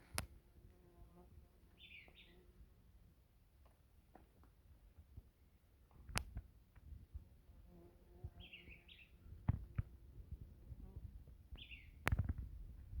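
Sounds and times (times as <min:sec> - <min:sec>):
bird chirping: 0:01.7 - 0:02.4, 0:08.4 - 0:09.2, 0:11.5 - 0:12.0.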